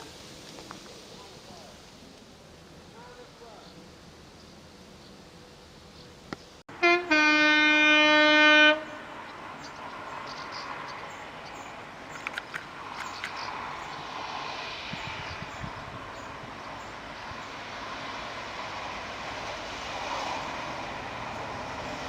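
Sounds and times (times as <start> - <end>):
train passing on track: 0.0 - 22.0
train horn: 6.7 - 9.0
sharp clicks: 12.1 - 13.5.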